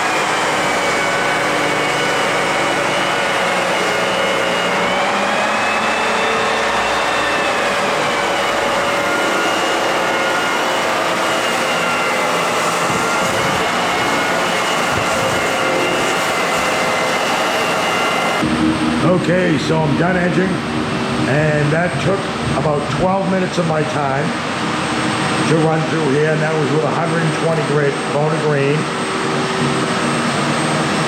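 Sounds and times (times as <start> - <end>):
floor edger sanding: 0.0 - 19.4.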